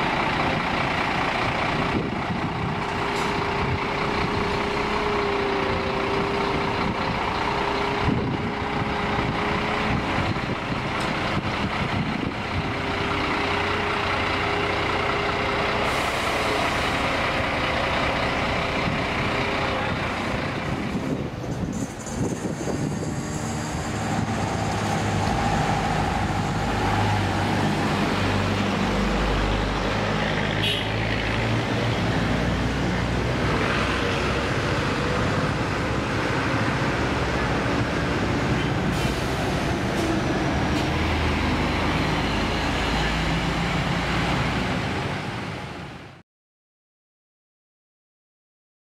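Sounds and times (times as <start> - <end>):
bus engine running: 0.0 - 46.2
road traffic noise: 0.0 - 46.2.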